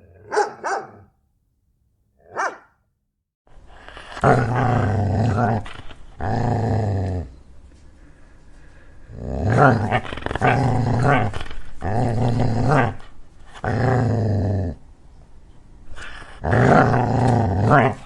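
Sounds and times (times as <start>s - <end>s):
dog barking: 0.0s - 1.1s, 2.2s - 2.8s
dog growling: 3.8s - 7.4s, 9.1s - 14.8s, 15.9s - 18.0s.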